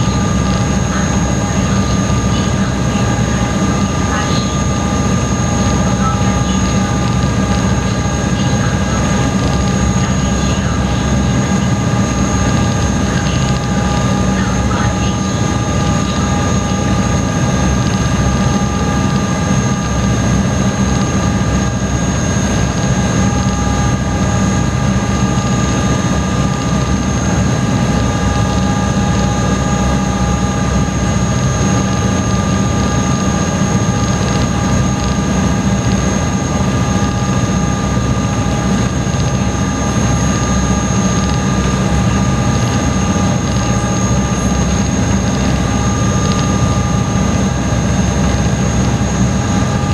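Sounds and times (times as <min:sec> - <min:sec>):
boat engines droning: 0:00.0 - 0:49.9
high engine whine: 0:00.0 - 0:49.9.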